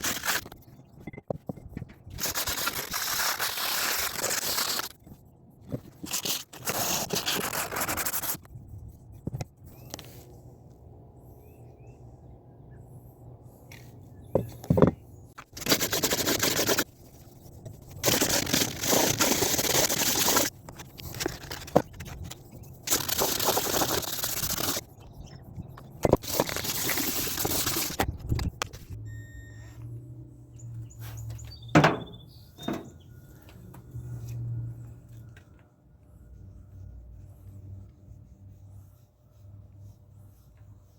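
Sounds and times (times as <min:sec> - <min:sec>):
sharp clicks and knocks: 0:31.7 - 0:33.0.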